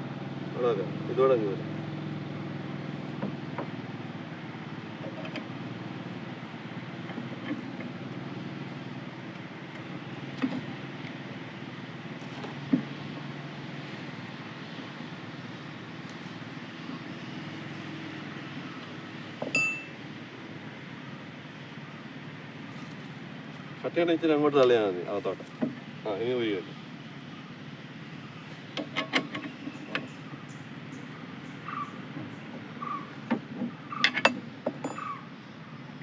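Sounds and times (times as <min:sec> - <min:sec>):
sharp metal clinks and knocks: 0:19.5 - 0:20.0, 0:34.0 - 0:35.2.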